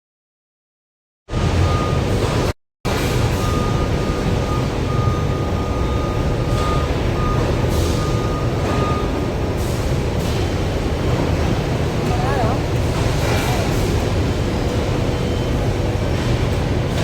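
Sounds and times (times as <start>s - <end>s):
heavy vehicle engine rumbling: 1.3s - 17.0s
reversing alarm beeps: 1.4s - 9.8s, 14.7s - 16.2s.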